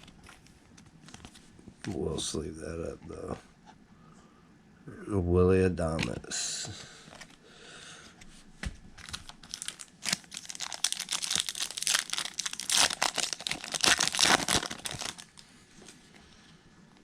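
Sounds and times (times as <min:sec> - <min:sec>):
wrapper crinkling and tearing: 0:09.0 - 0:15.4.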